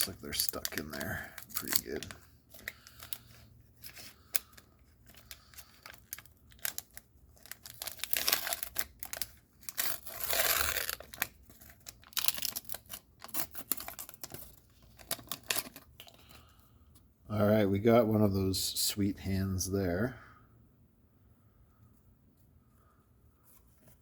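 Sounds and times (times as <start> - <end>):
paper wrapper crinkling and tearing: 0.0 - 16.4.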